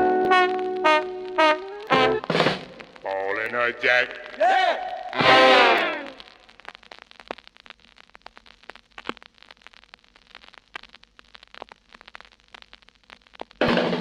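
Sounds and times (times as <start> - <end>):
music: 0.0 - 3.1
vinyl clicks and pops: 0.0 - 14.0
vinyl crackle and rumble: 0.0 - 14.0.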